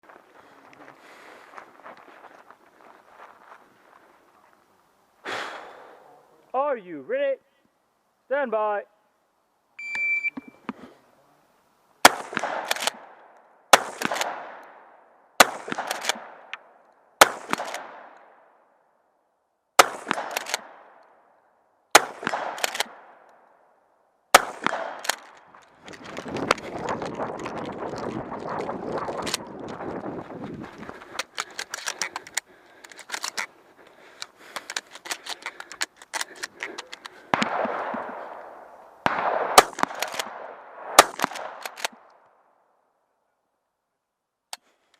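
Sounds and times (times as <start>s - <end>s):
shotgun shots: 12.0s - 16.5s, 17.2s - 18.3s, 19.8s - 21.0s, 21.9s - 23.2s, 24.3s - 25.4s, 37.3s - 42.0s
rustling: 24.6s - 38.4s.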